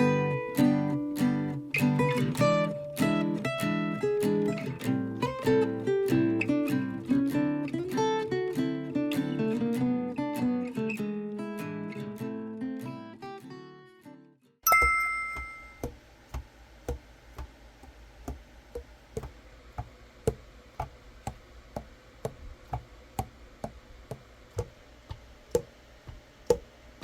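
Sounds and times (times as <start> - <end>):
bright chime: 14.7 - 15.9.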